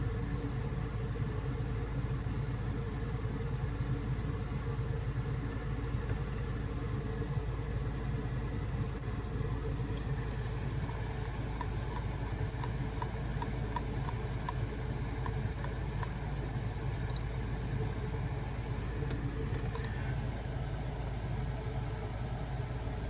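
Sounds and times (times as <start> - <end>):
low mechanical hum: 0.0 - 23.0
light even ticks: 10.8 - 16.2, 17.0 - 20.0.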